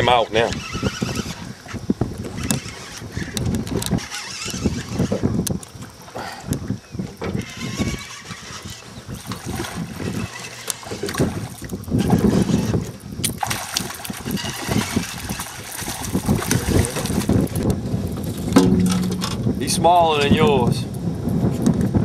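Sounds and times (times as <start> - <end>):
wind buffeting microphone: 0.0 - 22.0
water splashing around boat: 0.5 - 19.9
sharp knocks: 18.6 - 19.5.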